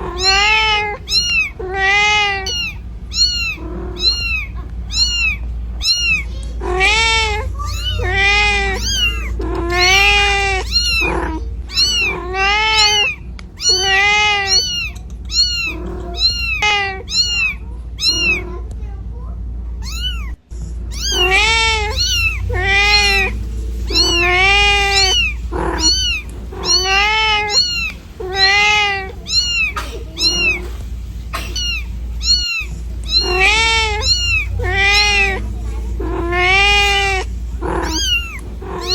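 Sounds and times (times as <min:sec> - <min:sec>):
cat meowing: 0:00.0 - 0:18.7, 0:19.8 - 0:38.9
low rumble: 0:00.0 - 0:38.9.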